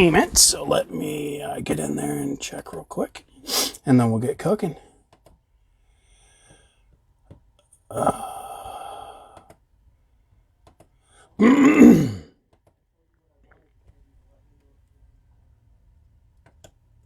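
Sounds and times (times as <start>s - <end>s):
man's wordless sigh: 7.9s - 9.5s.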